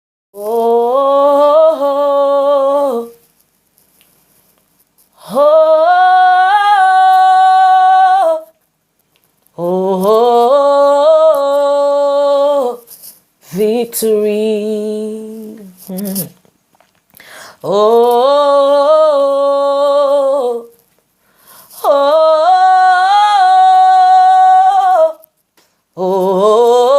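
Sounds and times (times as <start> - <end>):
woman singing wordless notes: 0.4 - 3.3, 5.2 - 8.6, 9.5 - 16.4, 17.5 - 20.8, 21.7 - 25.3, 26.0 - 26.9.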